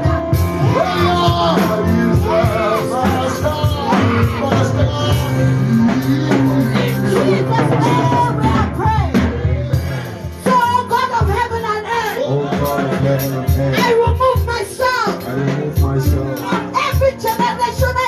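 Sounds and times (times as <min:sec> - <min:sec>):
bass notes: 0:00.0 - 0:17.2
drum beat: 0:00.0 - 0:18.0
person singing: 0:00.0 - 0:18.0.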